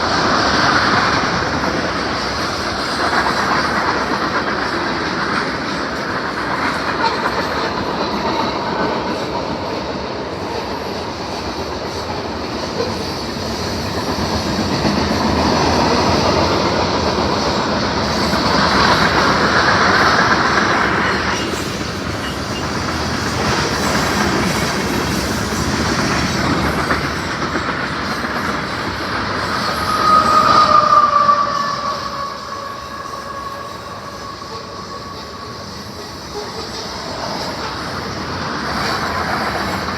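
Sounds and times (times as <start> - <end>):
train cars rolling on track: 0.0 - 39.9
high squeal: 28.0 - 38.1.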